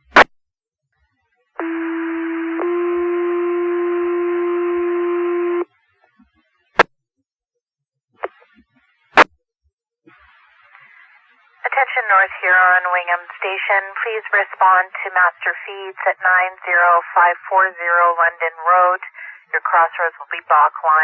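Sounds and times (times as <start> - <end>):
radio hiss: 10.1 - 21.0.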